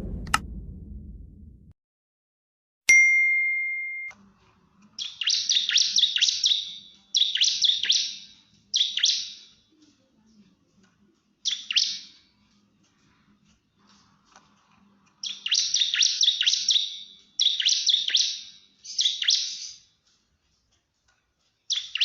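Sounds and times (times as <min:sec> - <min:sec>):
click: 0:00.2 - 0:00.5
ringing ding tone: 0:02.9 - 0:04.1
bird singing sharp chirps: 0:05.0 - 0:08.2, 0:15.2 - 0:19.8.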